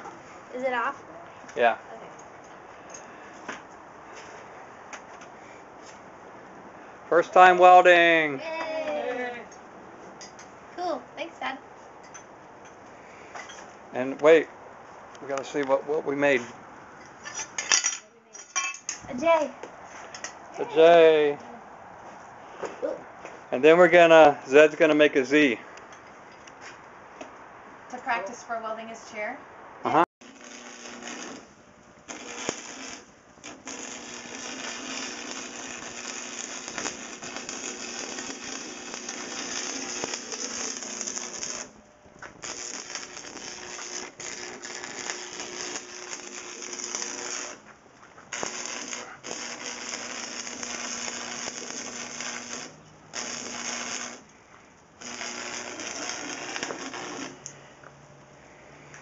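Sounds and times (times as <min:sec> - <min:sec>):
arc welder crackling: 0:07.1 - 0:09.4, 0:30.2 - 0:57.6.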